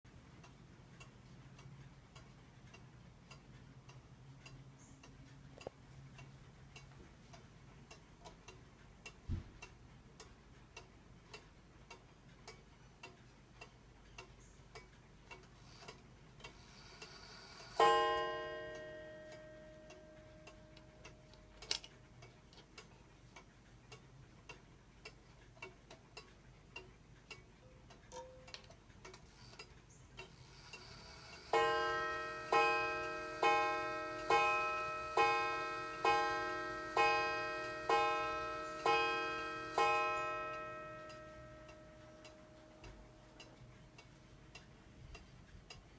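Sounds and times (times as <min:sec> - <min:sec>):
pendulum clock ticking: 0:00.1 - 0:45.9
clock gong strike: 0:31.6 - 0:42.2.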